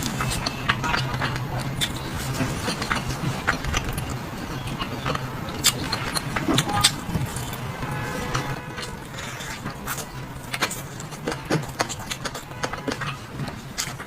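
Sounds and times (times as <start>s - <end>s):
steady background noise: 0.0s - 14.0s.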